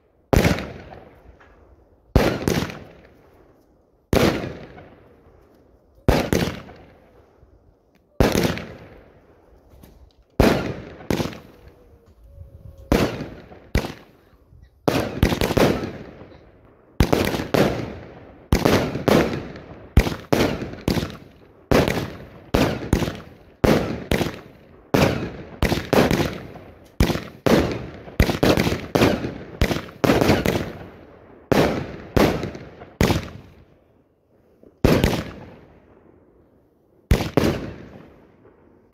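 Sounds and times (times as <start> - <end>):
fireworks bangs and rumble: 0.3 - 3.4, 4.1 - 5.2, 6.1 - 7.2, 8.1 - 11.8, 12.7 - 14.2, 14.8 - 16.4, 17.0 - 33.6, 34.8 - 36.0.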